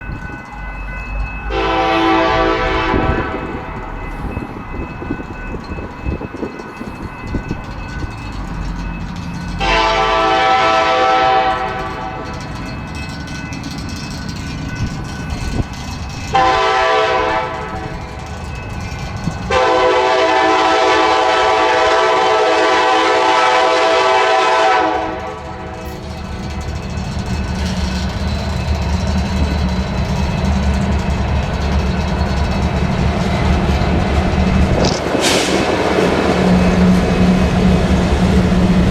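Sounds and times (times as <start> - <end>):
locomotive rumble: 0.0 - 38.9
locomotive air horn blasts: 1.5 - 3.7, 9.6 - 12.2, 16.3 - 17.9, 19.5 - 25.8.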